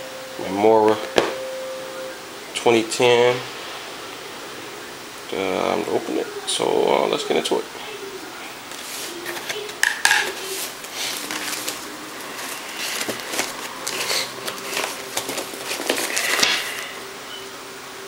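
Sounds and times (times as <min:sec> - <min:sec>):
cardboard rustling: 0:08.7 - 0:17.0
clicks and knocks of box handling: 0:12.4 - 0:16.8.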